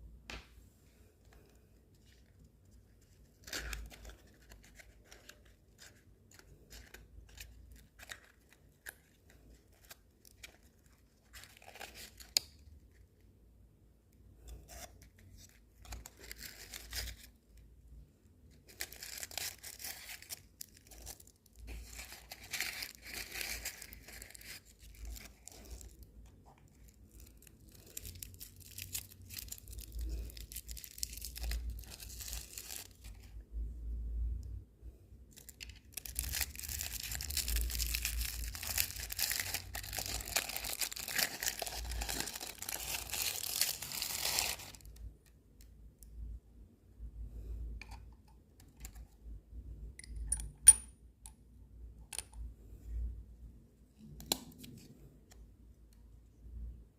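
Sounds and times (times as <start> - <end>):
packaging tearing and crinkling: 15.4 - 17.3, 18.6 - 26.0, 26.8 - 33.3, 35.3 - 45.0.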